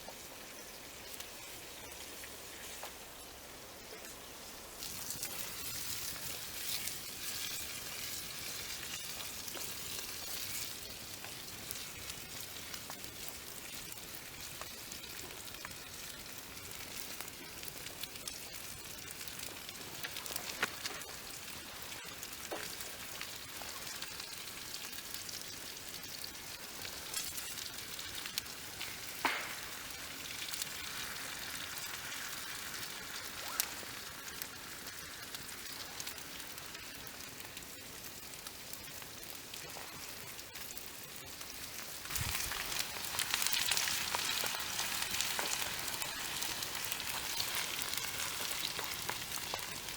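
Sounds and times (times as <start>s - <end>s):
potatoes sizzling in a pan: 0.0s - 49.9s
sharp pops: 29.2s - 29.6s.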